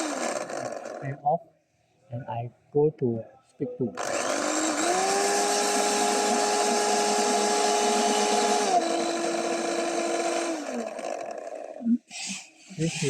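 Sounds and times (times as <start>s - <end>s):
blender motor whine: 0.0s - 1.2s, 4.0s - 13.0s.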